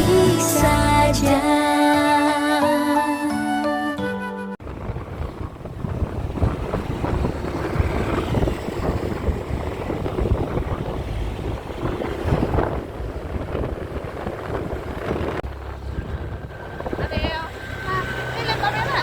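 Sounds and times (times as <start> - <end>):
wind buffeting microphone: 4.6 - 19.0.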